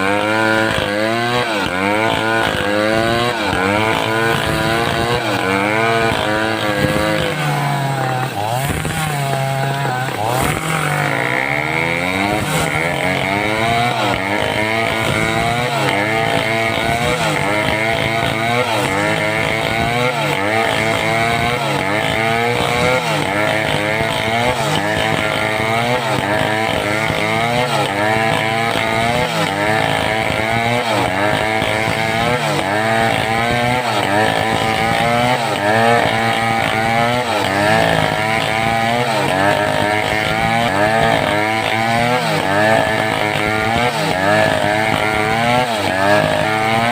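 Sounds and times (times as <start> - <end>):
chainsaw cutting wood: 0.0 - 46.9.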